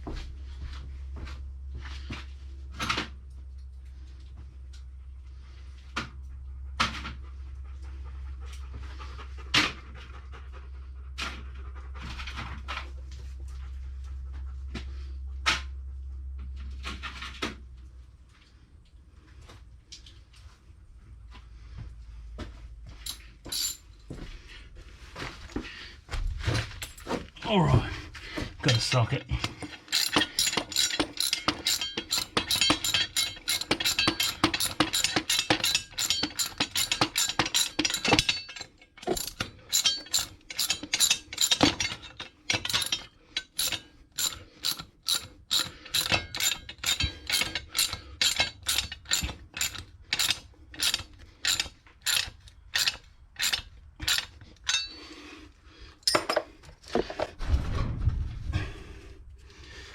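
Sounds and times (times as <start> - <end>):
ratchet wrench clicking: 29.4 - 54.9
low scraping rumble: 57.2 - 59.5.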